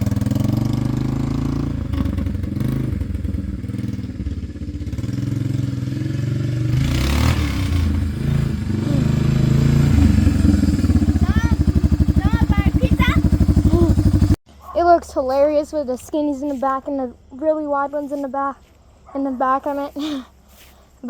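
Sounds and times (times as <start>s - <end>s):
atv engine running at low revs: 0.0s - 14.4s.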